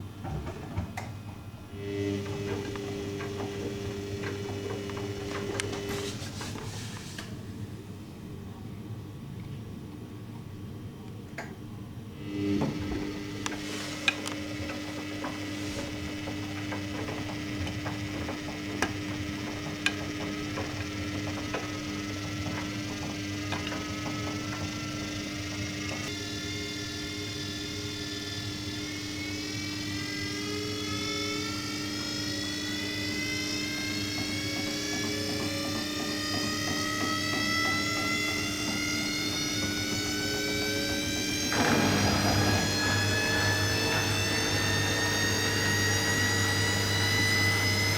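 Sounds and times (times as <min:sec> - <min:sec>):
washing machine motor whine: 0:00.0 - 0:47.9
washing machine spin rush: 0:01.2 - 0:08.4, 0:12.1 - 0:47.9
washing machine knocking: 0:34.1 - 0:47.9.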